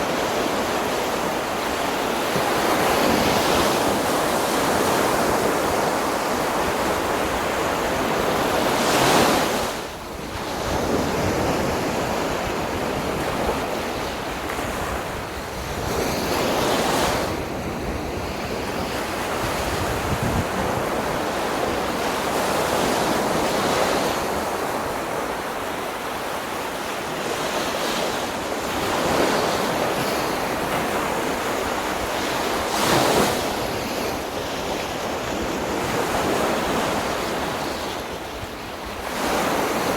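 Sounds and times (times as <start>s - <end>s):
sea waves breaking on beach: 0.0s - 39.9s.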